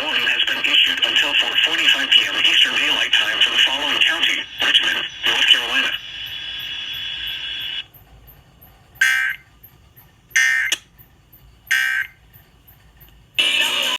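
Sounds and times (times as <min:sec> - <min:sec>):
radio hiss: 0:00.0 - 0:08.0, 0:13.4 - 0:13.9.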